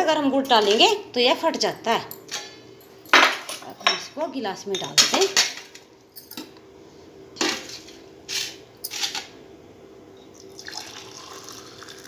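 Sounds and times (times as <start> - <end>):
milk pouring into glass: 10.3 - 12.0.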